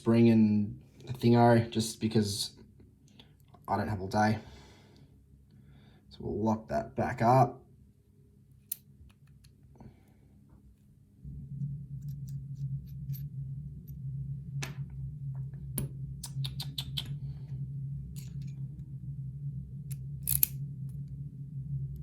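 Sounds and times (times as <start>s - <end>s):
low steady hum: 0.0s - 22.0s
lock picking metal clicks: 20.2s - 20.6s.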